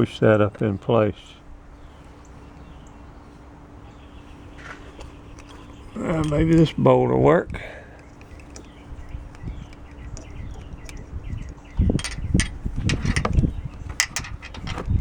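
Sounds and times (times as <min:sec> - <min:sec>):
metal parts clicking and knocking: 0:05.4 - 0:06.7, 0:08.0 - 0:15.0.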